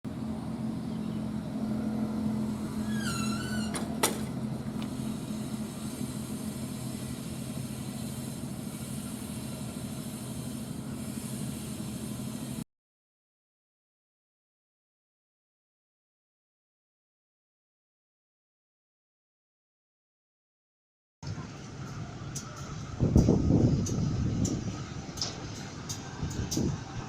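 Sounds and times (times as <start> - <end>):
diesel locomotive humming: 0.1 - 12.6, 21.2 - 27.0
short wavering squeal: 2.4 - 3.9.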